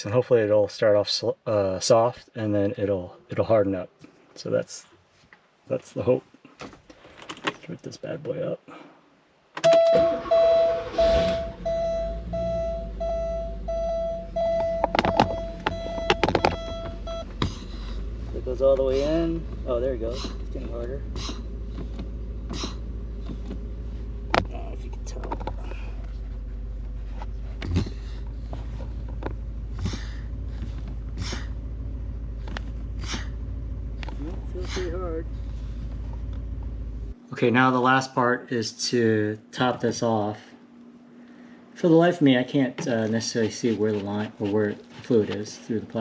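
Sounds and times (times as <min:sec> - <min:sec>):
dashboard warning chime beeping: 0:09.6 - 0:17.4
engine cranking: 0:09.6 - 0:37.2
car engine running: 0:09.9 - 0:37.6
sharp knocks: 0:14.6 - 0:17.7.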